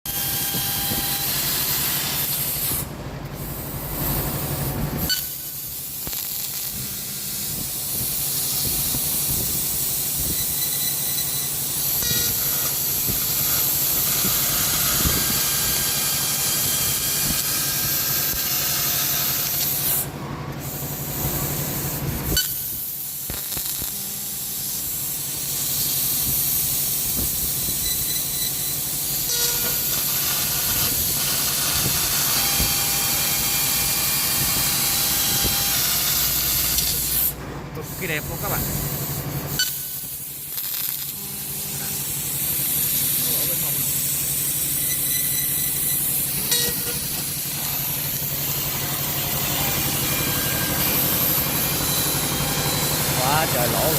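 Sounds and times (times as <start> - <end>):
laser cutter gas jet hiss: 0.1 - 53.9
low machine hum: 43.2 - 53.9.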